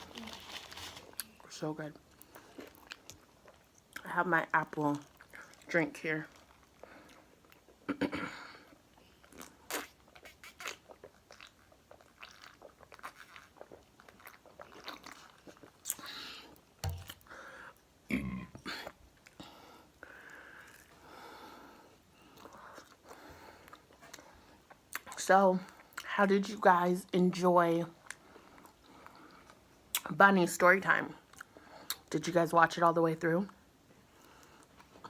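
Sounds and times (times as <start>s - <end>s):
close chewing and biting: 2.1s - 4.1s, 4.8s - 7.8s, 9.2s - 17.3s.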